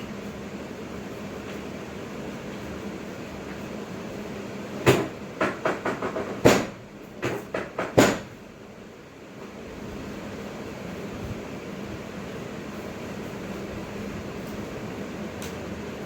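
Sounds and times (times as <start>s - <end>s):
steady background hum: 0.0s - 16.0s
knocks and thumps: 4.9s - 8.3s.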